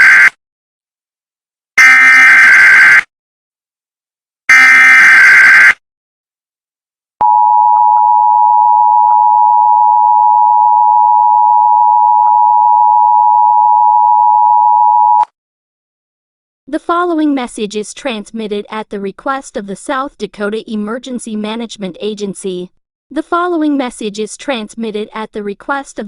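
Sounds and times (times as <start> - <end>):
harsh electronic data screech: 1.8 - 3.1, 4.5 - 5.8.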